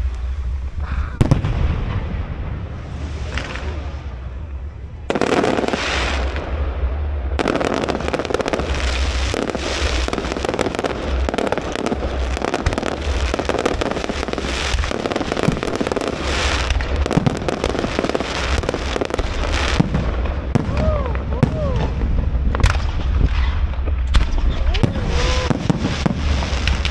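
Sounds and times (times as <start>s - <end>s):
fireworks crackling and popping: 0.0s - 26.9s.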